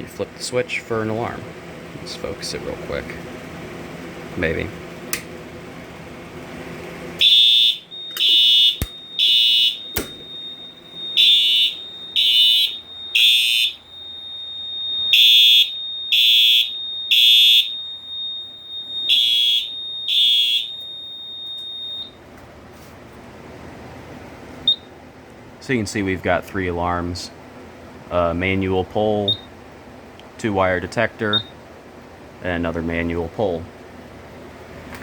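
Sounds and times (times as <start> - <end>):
fire alarm horn blasts: 7.2 - 22.2
sharp clicks: 8.1 - 9.0, 10.0 - 10.2.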